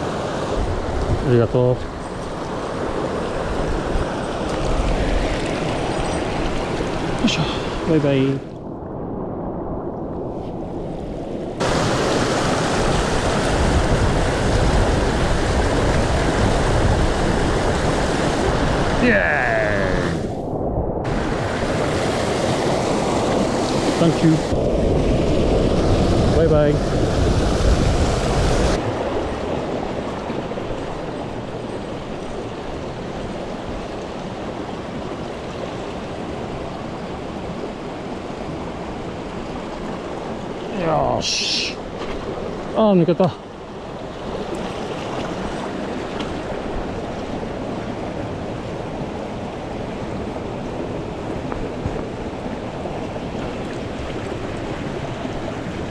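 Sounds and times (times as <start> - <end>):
stream water rushing over rocks: 11.6 - 20.3, 21.1 - 24.7, 28.3 - 55.9.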